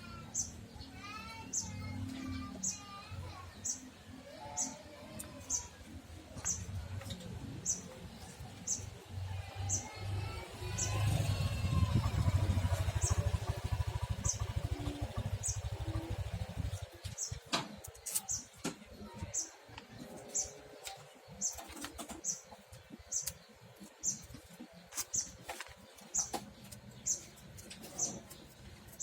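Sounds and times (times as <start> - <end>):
small bird chirping: 9.6 - 29.0.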